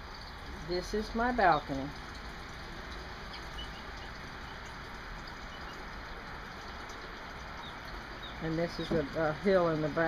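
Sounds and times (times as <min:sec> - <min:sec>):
garden fountain splashing: 0:00.0 - 0:10.0
faint bird chirps: 0:03.3 - 0:04.7, 0:05.4 - 0:05.9.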